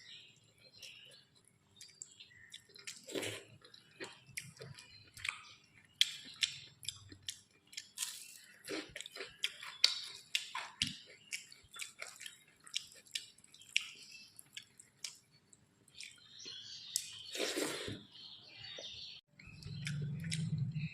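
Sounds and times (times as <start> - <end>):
wet chewing with lip smacks: 0.8 - 16.2.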